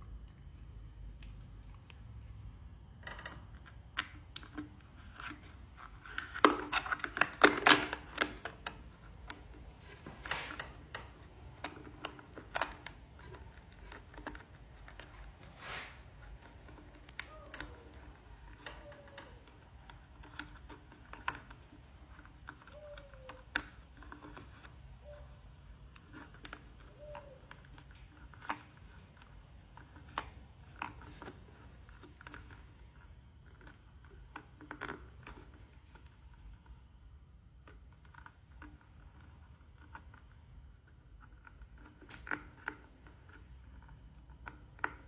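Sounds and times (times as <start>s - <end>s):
clicks and scrapes: 2.9s - 36.8s, 37.6s - 45.0s
wire clicking against plastic: 3.0s - 37.0s, 37.6s - 45.0s.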